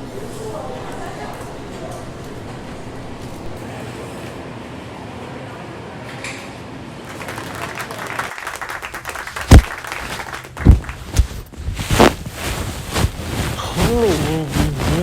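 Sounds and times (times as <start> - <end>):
crowd applause: 7.0 - 11.0
sharp knocks or claps: 9.4 - 9.8.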